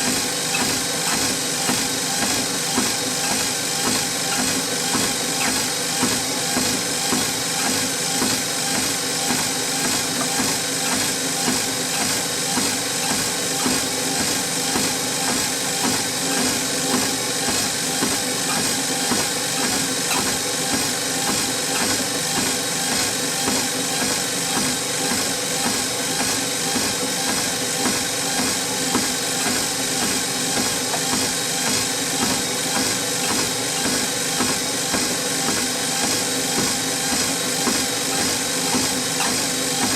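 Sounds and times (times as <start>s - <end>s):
footfalls on treadmill: 0.0s - 39.9s
treadmill motor hum and belt hiss: 0.0s - 39.9s.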